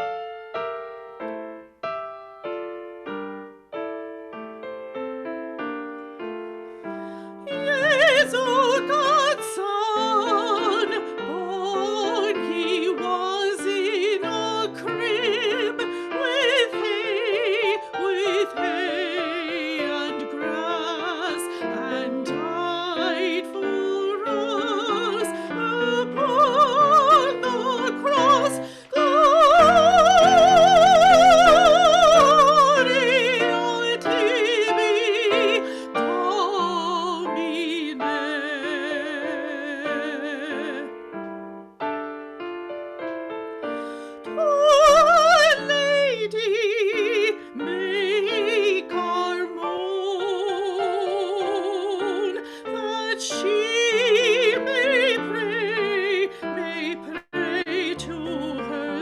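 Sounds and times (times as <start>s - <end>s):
piano accompaniment: 0.0s - 59.0s
woman singing with vibrato: 7.3s - 41.0s, 44.2s - 59.0s.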